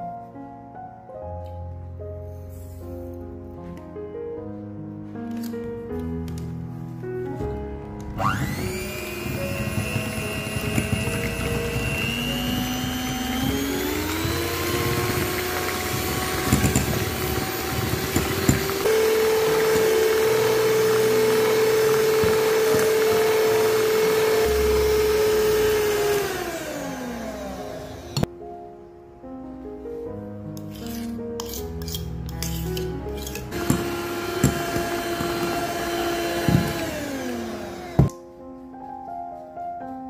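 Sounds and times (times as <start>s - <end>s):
kitchen mixer motor running: 8.2s - 28.3s, 33.5s - 38.1s.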